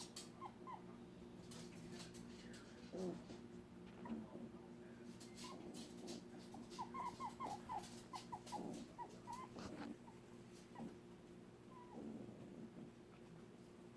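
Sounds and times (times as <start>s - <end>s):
pet squeaking: 5.3s - 10.9s.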